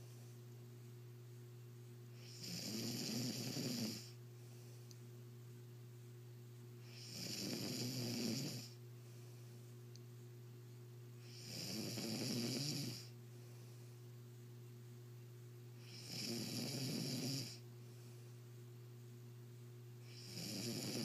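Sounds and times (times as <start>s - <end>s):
steady low hum: 0.0s - 21.0s
man snoring: 2.2s - 4.2s, 6.8s - 8.8s, 11.2s - 13.1s, 15.8s - 17.6s, 20.0s - 21.0s.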